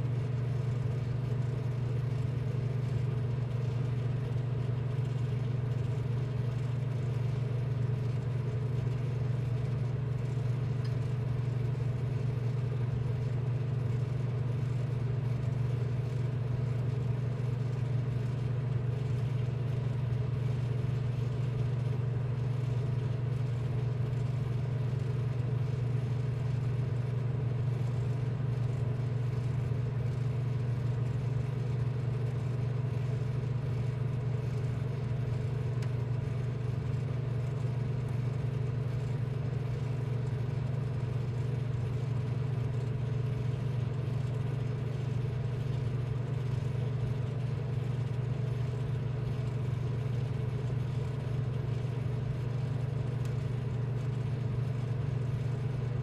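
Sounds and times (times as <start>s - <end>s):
low machine hum: 0.0s - 56.0s.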